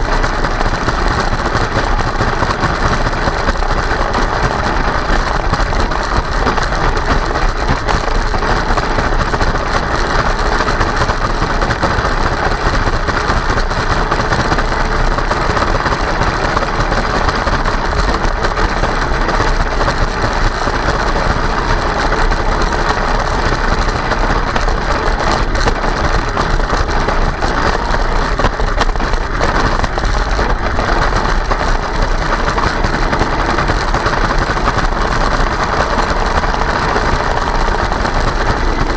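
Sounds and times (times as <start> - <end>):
toy tracked vehicle whirring: 0.0 - 38.9.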